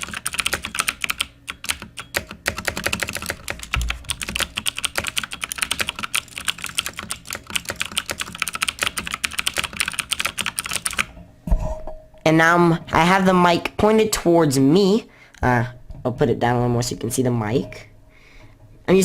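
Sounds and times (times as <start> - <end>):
clicky mechanical keyboard typing: 0.0 - 11.1.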